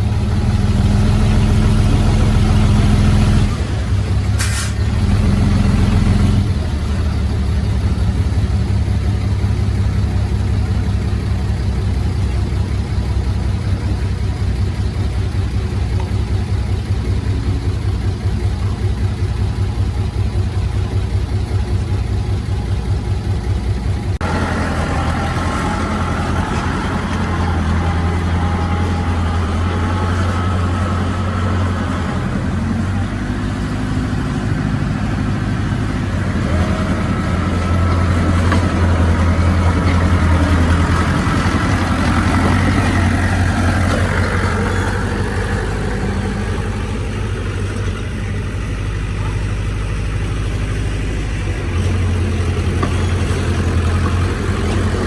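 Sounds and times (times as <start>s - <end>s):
heavy diesel engines running: 0.0s - 55.0s
brief hiss: 4.4s - 4.8s.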